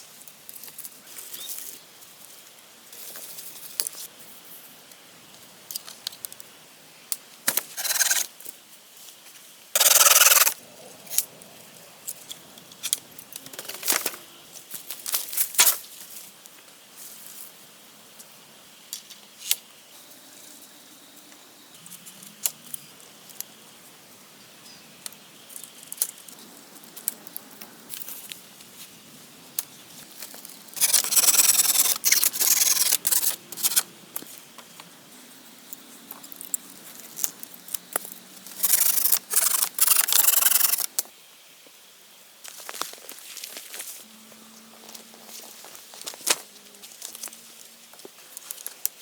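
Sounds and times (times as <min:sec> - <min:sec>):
scraping and rubbing: 0:07.8 - 0:08.2, 0:09.8 - 0:10.6, 0:30.8 - 0:33.8, 0:38.5 - 0:40.9
loud rasping: 0:07.8 - 0:08.3, 0:09.8 - 0:10.6, 0:30.8 - 0:33.8, 0:38.6 - 0:40.9
sharp clicks: 0:09.8 - 0:10.6, 0:30.8 - 0:33.9, 0:38.6 - 0:40.9.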